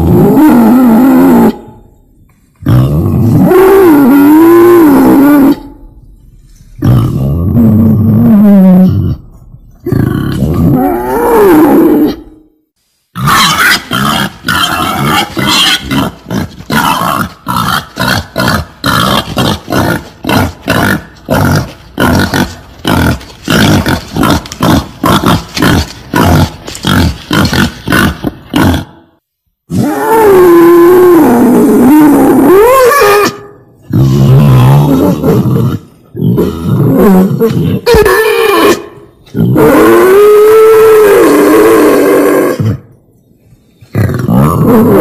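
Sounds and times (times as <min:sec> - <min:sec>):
wild boar squealing: 0:13.2 - 0:21.6, 0:36.3 - 0:42.8.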